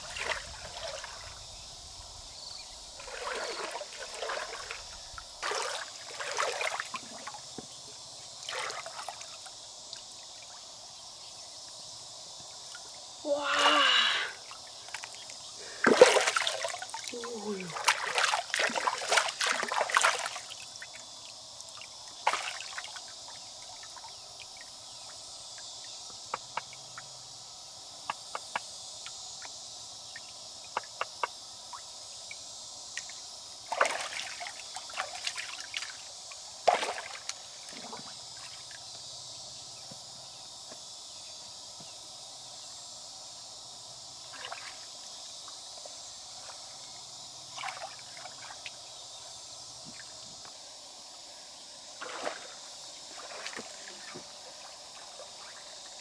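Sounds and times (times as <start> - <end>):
water splashing and sloshing: 0.0 - 1.6, 2.8 - 7.7, 8.4 - 9.6, 12.7 - 24.7, 33.7 - 38.8, 44.3 - 45.0, 47.5 - 48.9, 52.0 - 56.0.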